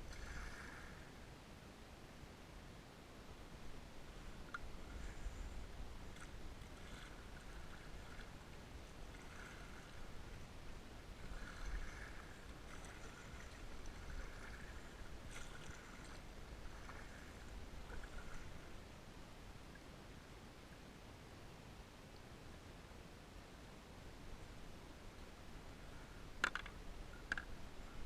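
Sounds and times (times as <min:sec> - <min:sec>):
steady low rumble: 0:03.2 - 0:19.7
paddle splashing in water: 0:04.4 - 0:10.4, 0:11.0 - 0:18.7.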